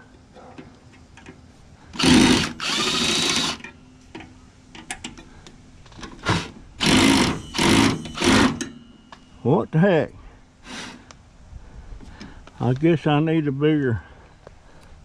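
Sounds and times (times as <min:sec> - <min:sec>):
cordless drill whining: 0:02.0 - 0:03.7, 0:06.2 - 0:08.8.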